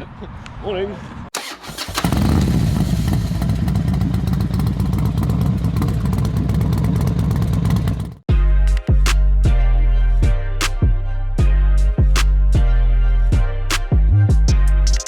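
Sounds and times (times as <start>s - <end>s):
motorcycle engine idling: 1.9s - 8.3s
music with heavy bass beat: 8.2s - 15.0s.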